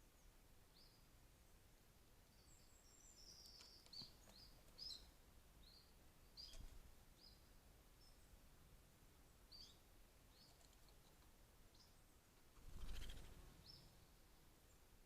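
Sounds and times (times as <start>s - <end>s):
faint clicks: 3.4s - 4.8s
woodpecker calling: 12.7s - 13.8s.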